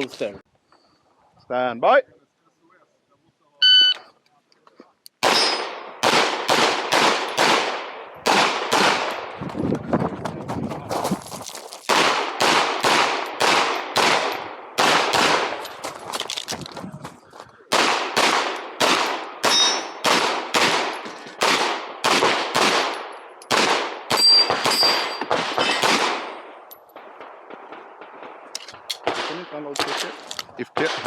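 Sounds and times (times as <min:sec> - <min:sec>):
handgun shots echoing: 0:05.2 - 0:09.4, 0:11.9 - 0:15.7, 0:17.7 - 0:31.0
steel targets pinging: 0:05.3 - 0:05.9, 0:19.4 - 0:20.0, 0:24.1 - 0:25.9.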